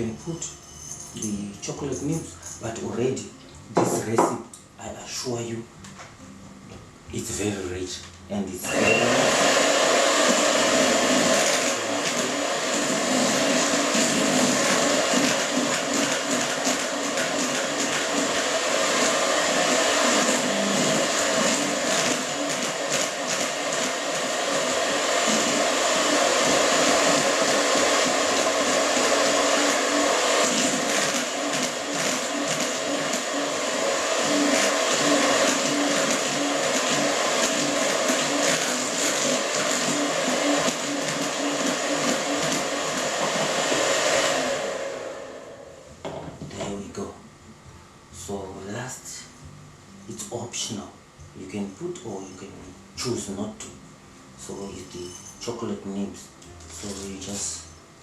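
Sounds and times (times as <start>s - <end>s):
electric mixer beating batter: 8.6s - 45.6s.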